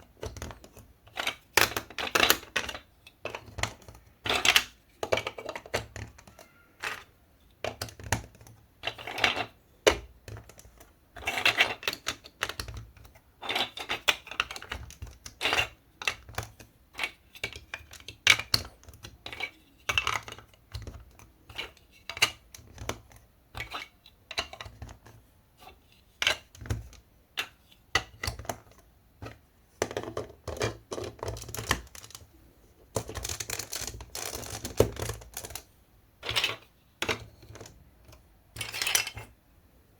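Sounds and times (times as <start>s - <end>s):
marble run clicking and clacking: 33.0s - 35.6s.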